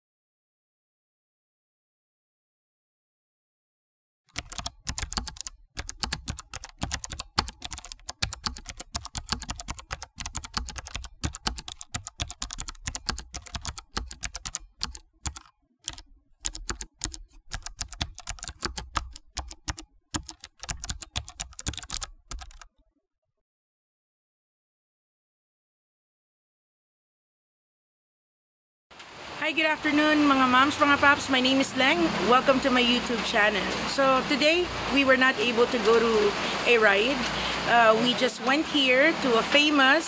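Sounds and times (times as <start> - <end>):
rapid keyboard clicking: 4.3 - 22.7.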